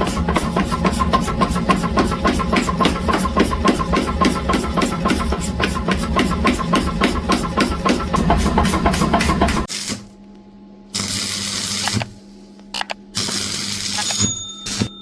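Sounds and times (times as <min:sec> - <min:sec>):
rapid pounding: 0:00.0 - 0:09.7
welding hiss and crackle: 0:09.6 - 0:10.0, 0:11.0 - 0:12.1, 0:13.2 - 0:14.0.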